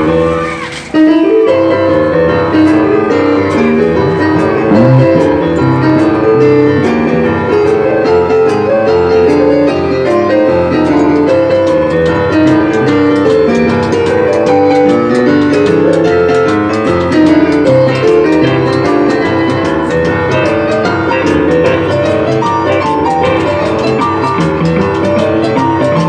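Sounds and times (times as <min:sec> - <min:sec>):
boogie-woogie piano music: 0:01.0 - 0:26.0
steady ticking beat: 0:04.0 - 0:07.0.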